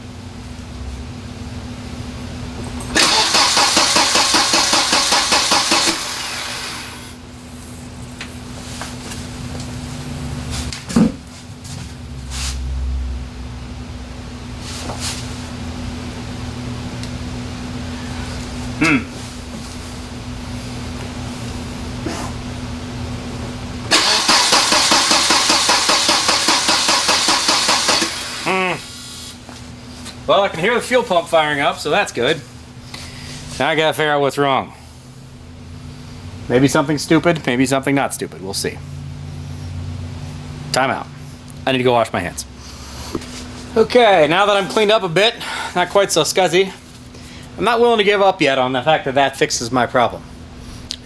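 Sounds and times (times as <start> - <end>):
steady hum: 0.0 - 51.0
car engine cranking: 2.8 - 7.0, 23.9 - 28.5.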